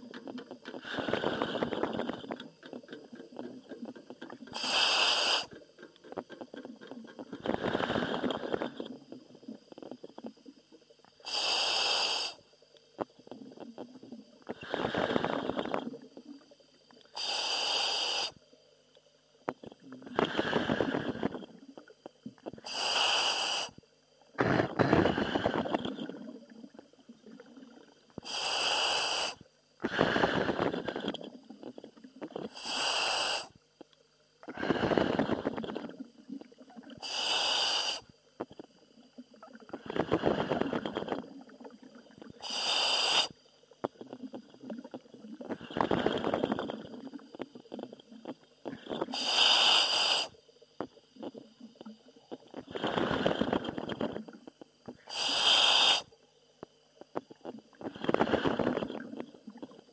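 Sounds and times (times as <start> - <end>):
air supply hiss in helmet: 4.5 - 5.6, 11.2 - 12.5, 17.1 - 18.4, 22.6 - 23.8, 28.2 - 31.1, 32.5 - 33.6, 37.0 - 38.1, 42.4 - 43.4, 48.7 - 50.4, 55.0 - 56.1
rushing exhale: 4.6 - 5.5, 20.2 - 21.3, 34.5 - 35.6.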